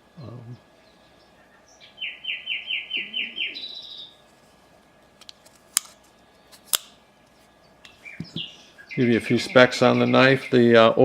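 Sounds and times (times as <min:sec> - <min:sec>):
songbird chirping and trilling: 0:00.2 - 0:04.2, 0:07.3 - 0:11.0.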